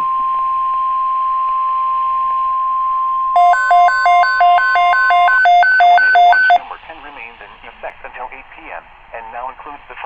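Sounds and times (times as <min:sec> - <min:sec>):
steady alarm tone: 0:03.3 - 0:06.6
two-tone beeping: 0:03.4 - 0:06.6.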